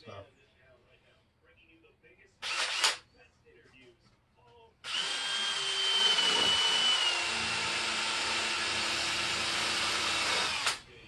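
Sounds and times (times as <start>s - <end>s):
electric drill sanding: 4.9s - 10.8s.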